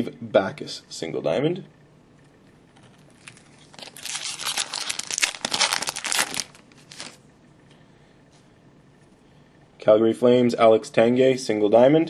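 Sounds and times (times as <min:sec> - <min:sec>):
foil wrapper crinkling and tearing: 0:02.8 - 0:07.2.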